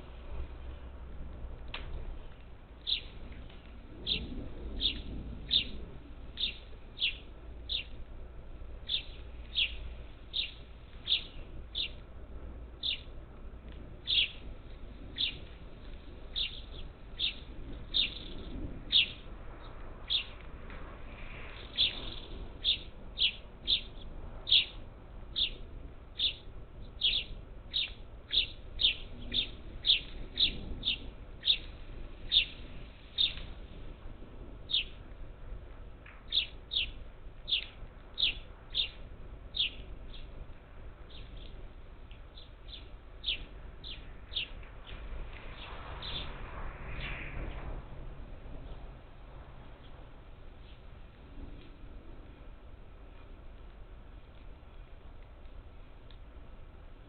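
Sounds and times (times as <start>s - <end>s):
bird chirping: 2.8s - 8.0s, 8.8s - 12.0s, 12.8s - 13.1s, 14.0s - 15.6s, 16.2s - 20.4s, 21.4s - 33.5s, 34.7s - 35.0s, 36.2s - 40.4s, 41.1s - 41.6s, 42.3s - 46.4s.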